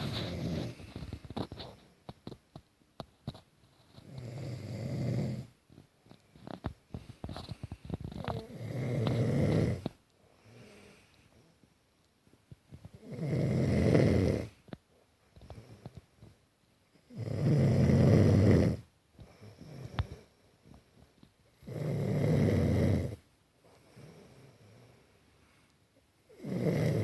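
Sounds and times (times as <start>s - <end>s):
loud snoring: 0.0s - 0.8s, 4.0s - 5.5s, 8.2s - 9.9s, 13.0s - 14.6s, 17.1s - 18.9s, 21.6s - 23.2s, 26.3s - 27.0s.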